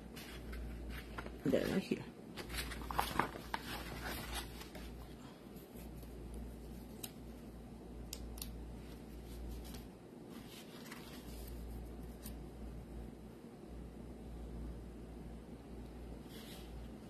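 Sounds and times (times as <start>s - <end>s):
low steady hum: 0.0s - 17.0s
paper pieces handled: 0.1s - 5.0s.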